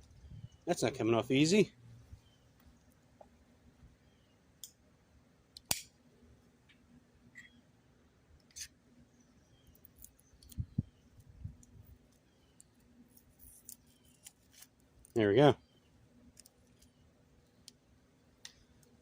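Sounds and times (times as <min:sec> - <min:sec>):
tape peeling clicks and scrapes: 0:08.4 - 0:08.8, 0:11.2 - 0:15.1.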